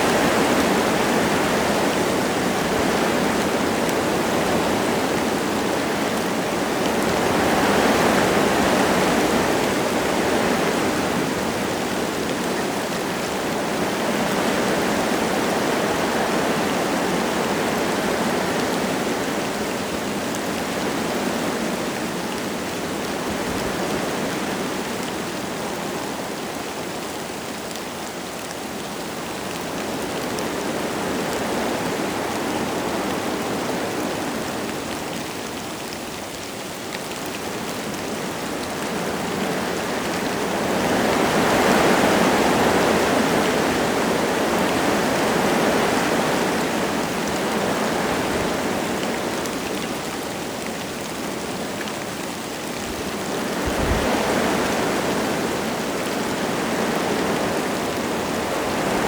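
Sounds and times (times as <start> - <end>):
light rain falling: 0.0 - 59.0
wind gusting through trees: 0.0 - 59.0.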